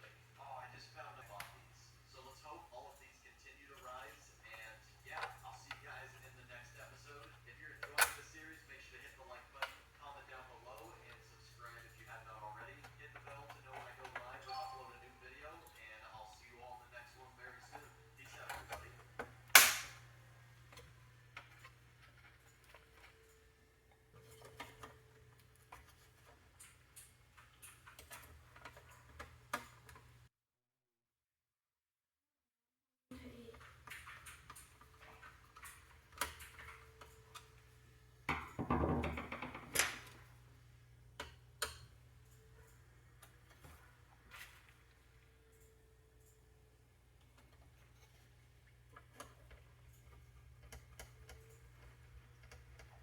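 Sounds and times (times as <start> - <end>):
light clicks and taps of parts: 20.6 - 30.1, 48.9 - 53.0.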